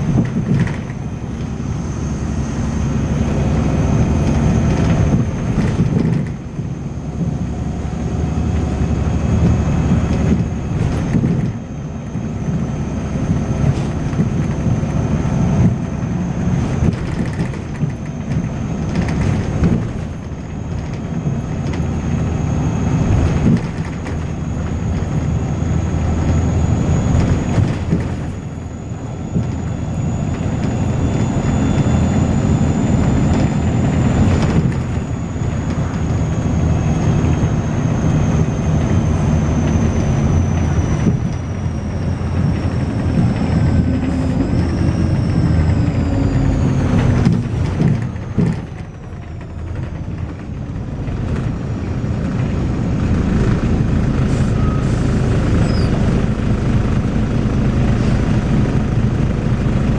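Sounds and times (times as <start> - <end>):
bus diesel engine working hard: 0.0 - 59.9
high-pitched whine: 22.0 - 47.8.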